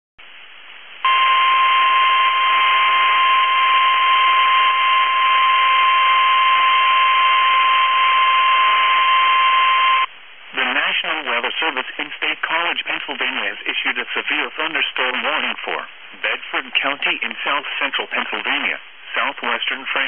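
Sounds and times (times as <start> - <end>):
radio static hiss: 0.2 - 20.0
steady alarm tone: 1.0 - 10.1.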